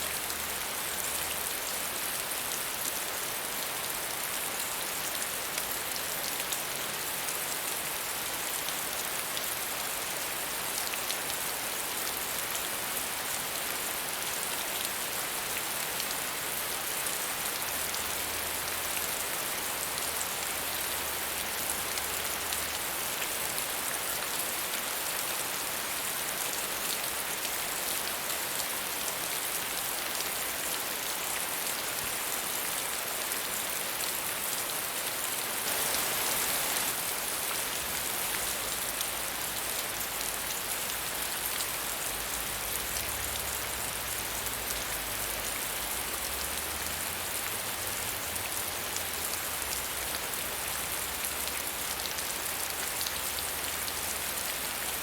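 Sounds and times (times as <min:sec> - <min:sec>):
steady rainfall: 0:00.0 - 0:55.0.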